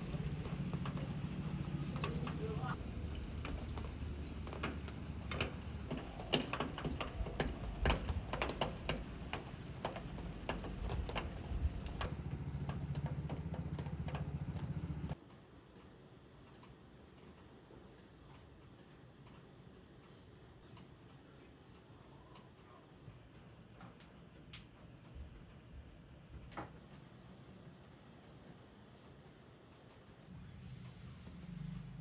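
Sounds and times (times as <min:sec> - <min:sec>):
light clicks and taps: 0:03.1 - 0:25.7.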